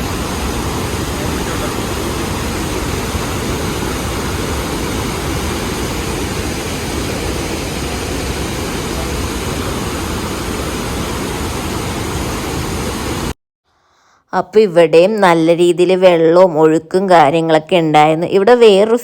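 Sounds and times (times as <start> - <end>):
waterfall rushing: 0.0 - 13.3.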